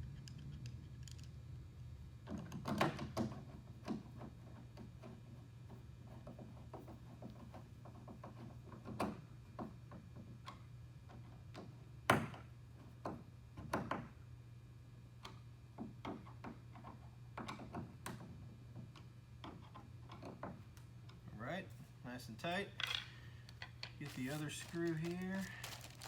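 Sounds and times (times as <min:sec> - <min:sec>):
steady low hum: 0:00.0 - 0:02.4, 0:16.9 - 0:26.0.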